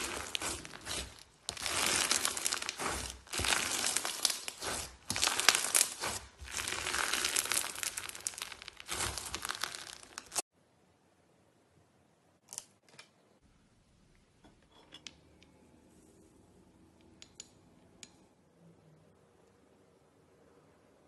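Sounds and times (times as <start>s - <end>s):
slime popping and crackling: 0.0s - 10.4s.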